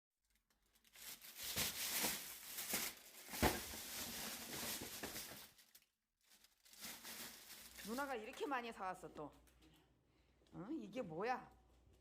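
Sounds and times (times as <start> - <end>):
plastic packaging crinkling: 0.2 - 8.6.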